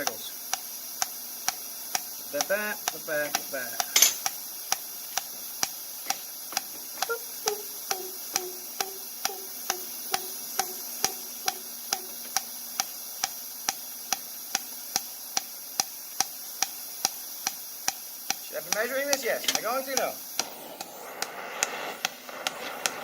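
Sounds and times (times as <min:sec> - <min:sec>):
hammer striking steel on anvil: 0:03.9 - 0:04.3.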